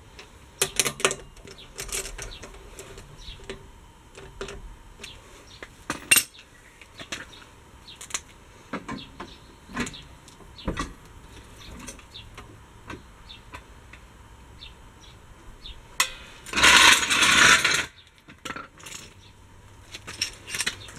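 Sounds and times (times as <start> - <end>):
metal tools clinking: 0.6 - 3.6, 5.9 - 6.4, 18.5 - 19.3, 19.9 - 20.9.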